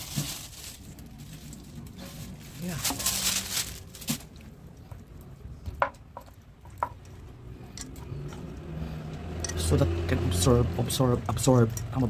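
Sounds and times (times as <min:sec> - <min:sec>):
squishy rustle of hands handling meat: 0:00.0 - 0:05.6.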